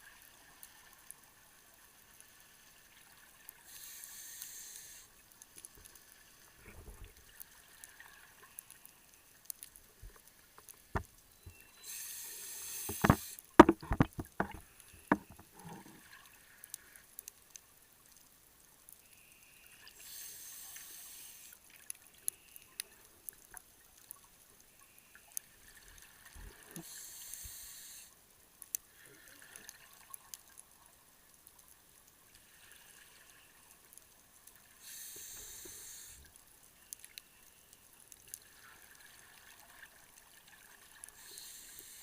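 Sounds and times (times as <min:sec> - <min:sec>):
scuba regulator hissing breaths: 0:03.7 - 0:05.1, 0:11.8 - 0:13.4, 0:20.0 - 0:21.6, 0:26.7 - 0:28.1, 0:34.8 - 0:36.3, 0:41.2 - 0:42.0
clicking and bubbling exhaled air: 0:10.6 - 0:16.0, 0:34.8 - 0:36.3.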